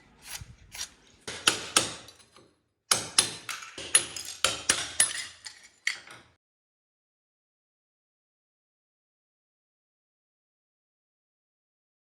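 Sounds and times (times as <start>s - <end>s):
hammer striking a chisel: 0.2s - 6.2s.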